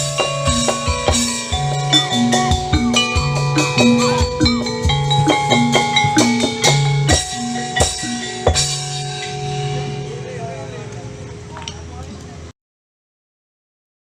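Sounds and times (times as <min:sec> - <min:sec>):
drum beat: 0:00.0 - 0:09.9
instrumental background music: 0:00.0 - 0:11.3.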